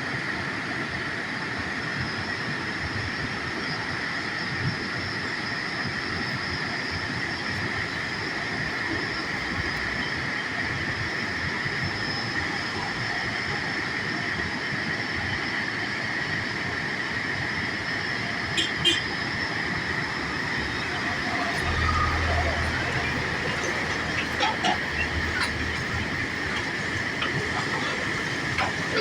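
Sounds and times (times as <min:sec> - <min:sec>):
high-pitched hum: 0:18.6 - 0:29.0
waterfall rushing: 0:19.8 - 0:29.0.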